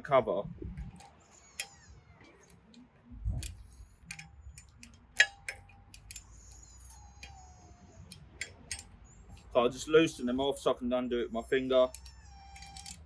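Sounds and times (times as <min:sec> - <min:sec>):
socket wrench clicking: 0:03.4 - 0:07.4, 0:08.0 - 0:09.5, 0:11.9 - 0:13.0.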